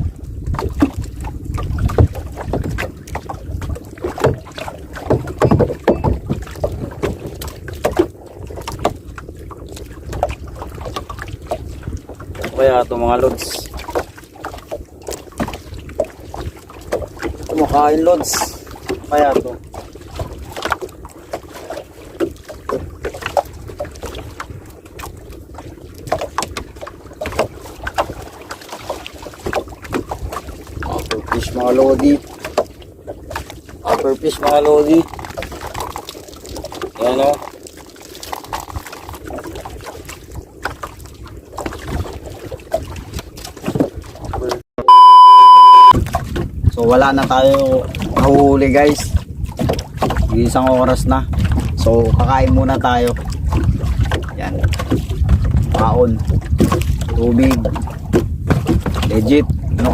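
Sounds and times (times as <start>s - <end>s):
wind rumbling on microphone: 0.0s - 45.0s, 45.8s - 59.9s
sea water lapping: 0.0s - 59.9s.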